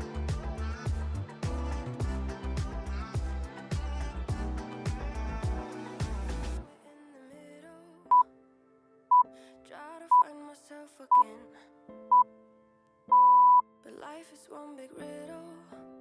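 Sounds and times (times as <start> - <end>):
quiet background music: 0.0 - 16.0
timer beeps: 13.1 - 13.6.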